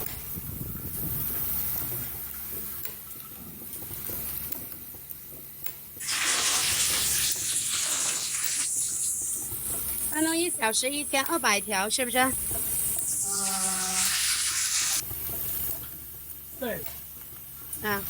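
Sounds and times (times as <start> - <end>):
loud even hiss: 6.0 - 15.0.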